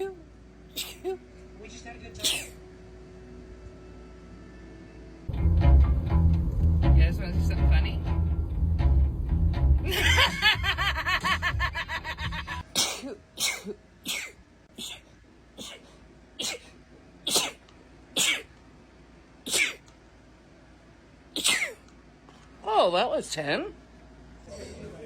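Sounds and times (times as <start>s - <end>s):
woman sneezing: 2.2s - 2.6s, 12.7s - 15.8s, 18.2s - 18.5s, 19.5s - 19.8s, 21.4s - 21.8s
music with plucked bass: 5.3s - 12.6s.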